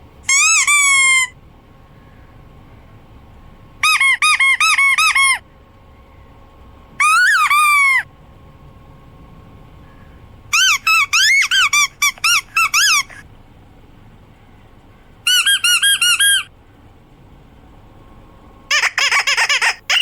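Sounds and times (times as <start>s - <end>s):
squeaky dog toy squeaking: 0.3s - 1.3s, 3.8s - 5.4s, 7.0s - 8.0s, 10.5s - 13.2s, 15.3s - 16.5s, 18.7s - 20.0s.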